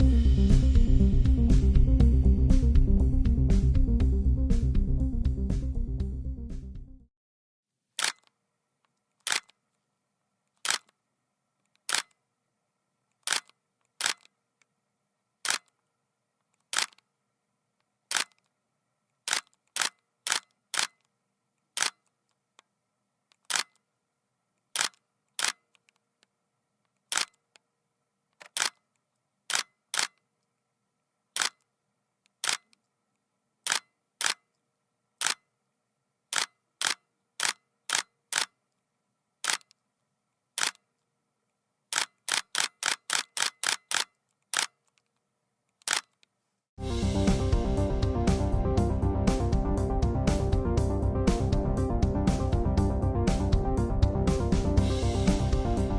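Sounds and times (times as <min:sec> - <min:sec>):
camera shutter clicks: 0:08.0 - 0:08.3, 0:09.2 - 0:09.6, 0:10.6 - 0:11.0, 0:11.9 - 0:12.2, 0:13.2 - 0:14.3, 0:15.4 - 0:15.7, 0:16.7 - 0:17.0, 0:18.1 - 0:18.4, 0:19.3 - 0:21.0, 0:21.8 - 0:22.0, 0:23.5 - 0:23.8, 0:24.8 - 0:25.6, 0:27.1 - 0:27.4, 0:28.4 - 0:28.8, 0:29.5 - 0:30.2, 0:31.4 - 0:31.6, 0:32.4 - 0:32.7, 0:33.7 - 0:34.4, 0:35.2 - 0:35.4, 0:36.3 - 0:38.6, 0:39.4 - 0:39.8, 0:40.6 - 0:40.8, 0:41.9 - 0:44.7, 0:45.8 - 0:46.2.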